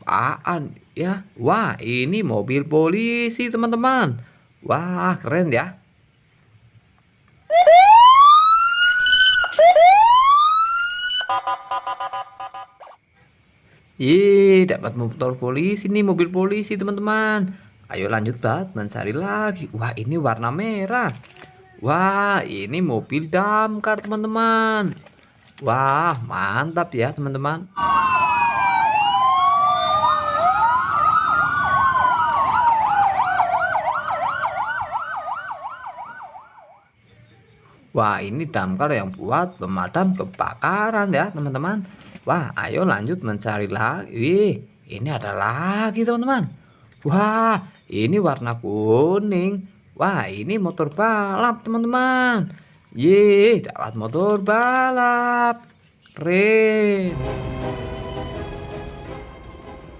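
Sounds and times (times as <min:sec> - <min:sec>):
police siren wailing: 0:07.5 - 0:13.0, 0:27.7 - 0:36.8, 0:57.1 - 0:59.9.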